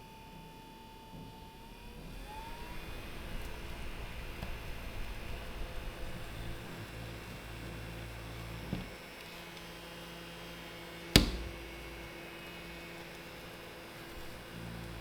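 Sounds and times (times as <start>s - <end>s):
desk fan motor humming: 1.9s - 15.0s
sharp click: 11.2s - 12.1s.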